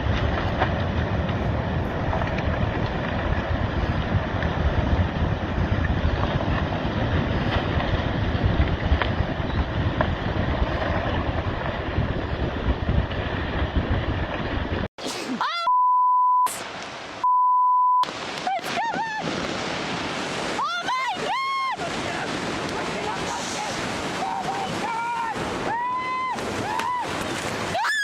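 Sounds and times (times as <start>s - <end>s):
wind buffeting microphone: 0.0s - 14.9s, 18.7s - 27.8s
rough water noise: 0.0s - 15.7s, 16.5s - 17.3s, 18.0s - 28.0s
steady beeps: 15.6s - 16.6s, 17.2s - 18.0s.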